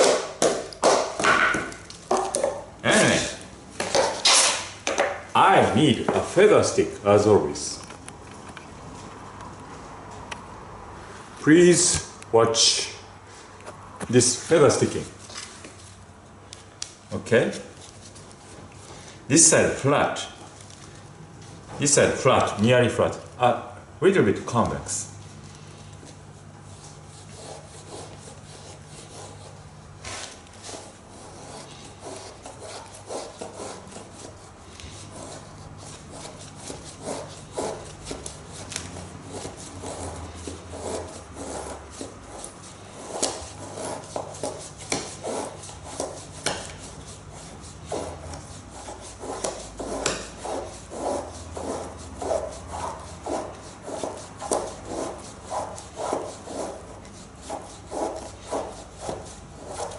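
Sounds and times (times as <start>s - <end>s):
hatchet scraping wood: 0.0s - 3.2s, 3.8s - 5.1s, 26.7s - 59.9s.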